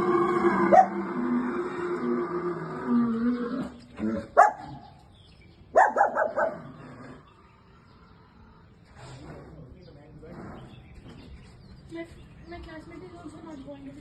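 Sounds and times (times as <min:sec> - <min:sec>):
dog barking: 0:00.7 - 0:01.0, 0:04.4 - 0:04.8, 0:05.8 - 0:06.6.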